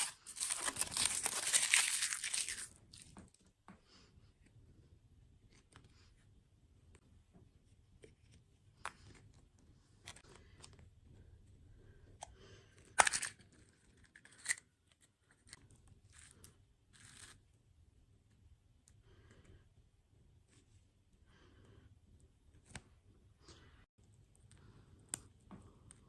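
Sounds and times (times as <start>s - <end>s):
food packaging crinkling: 0.0s - 3.2s.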